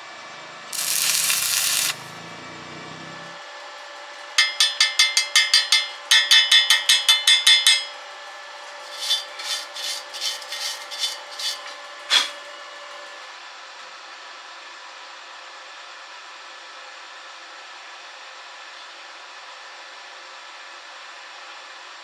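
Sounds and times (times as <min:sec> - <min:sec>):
hammer striking steel: 0:00.8 - 0:02.1, 0:04.4 - 0:08.0.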